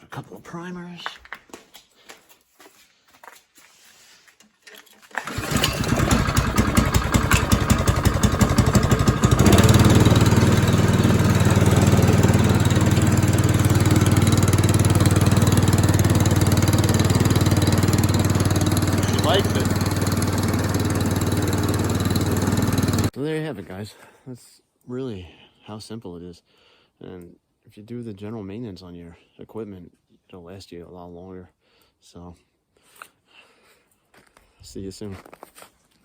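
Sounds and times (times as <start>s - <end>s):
snowblower engine starting and running: 4.7s - 23.1s.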